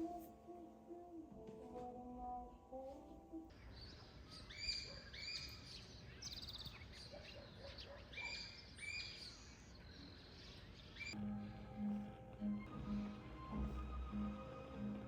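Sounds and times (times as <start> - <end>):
bird trill: 3.5 - 11.2
small birds chirping: 3.5 - 13.1.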